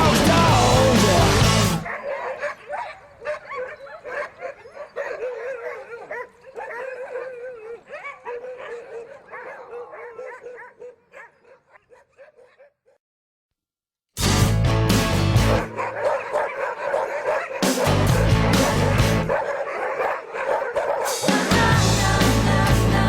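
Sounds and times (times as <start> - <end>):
sled dogs whining and howling: 0.0 - 13.0, 15.4 - 23.0.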